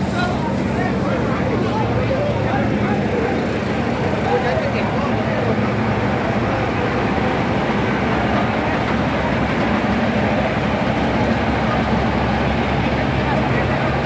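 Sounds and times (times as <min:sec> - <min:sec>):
continuous noisy din: 0:00.0 - 0:14.0
engine rumble: 0:00.0 - 0:14.0.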